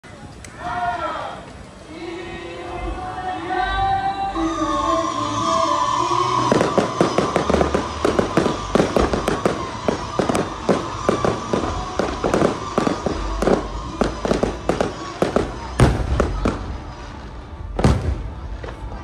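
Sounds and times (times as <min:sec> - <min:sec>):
fireworks bangs and crackles: 0:06.4 - 0:19.0.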